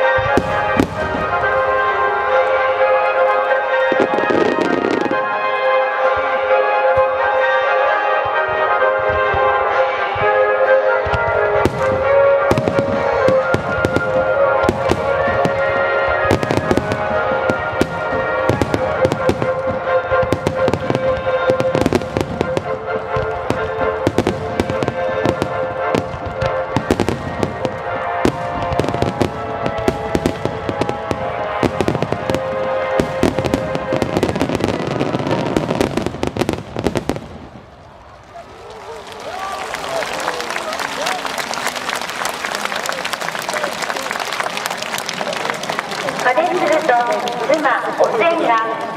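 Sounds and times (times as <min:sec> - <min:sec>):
fireworks bursting and crackling: 0:00.0 - 0:07.6, 0:10.3 - 0:48.9
music with long held notes: 0:00.0 - 0:37.7.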